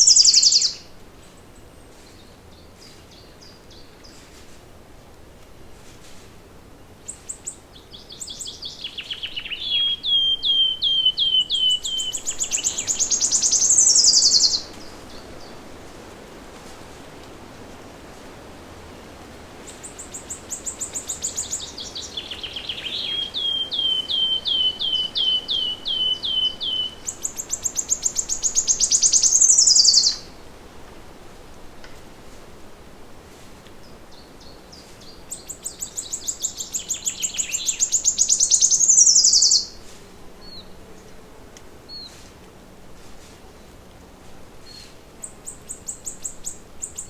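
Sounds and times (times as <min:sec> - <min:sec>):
songbird singing: 0:00.0 - 0:04.3, 0:06.8 - 0:15.8, 0:19.6 - 0:30.4, 0:33.7 - 0:41.2, 0:41.8 - 0:42.8, 0:44.1 - 0:47.0
faint background hiss: 0:00.0 - 0:47.0.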